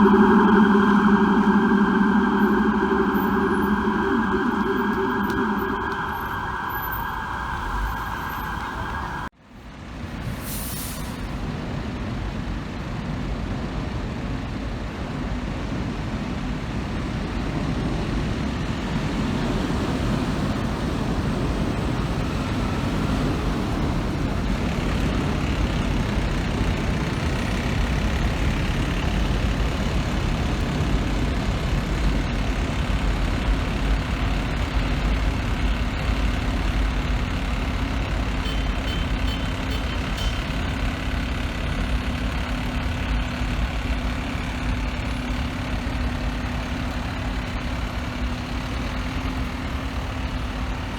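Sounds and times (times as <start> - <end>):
street traffic noise: 37.6 - 41.6.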